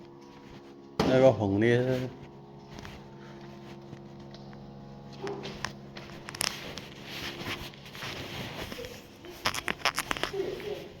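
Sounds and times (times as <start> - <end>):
steady hum of fixed tones: 0.0 - 11.0
handling clicks and rustles: 3.6 - 11.0.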